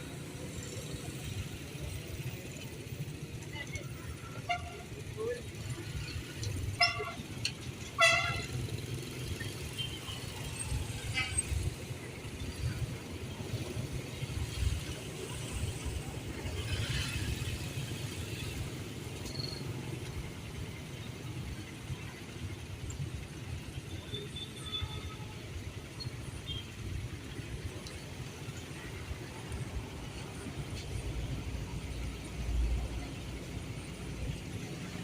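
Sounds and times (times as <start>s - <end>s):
road traffic rumble: 0.0s - 35.0s
vehicle horn toot: 6.8s - 7.2s, 8.0s - 8.6s.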